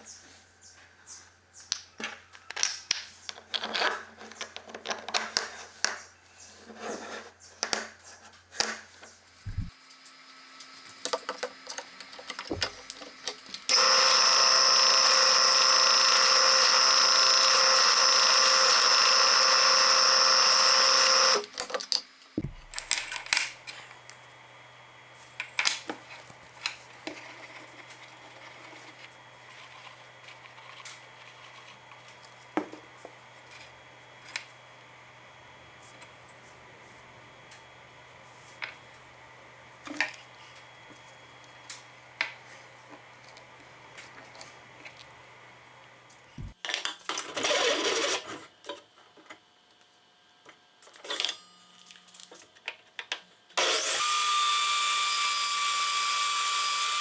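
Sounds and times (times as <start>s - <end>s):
small power tool whining: 9.4s - 9.7s, 12.5s - 12.9s, 13.6s - 21.7s, 22.4s - 39.2s, 42.2s - 46.6s, 53.6s - 57.0s.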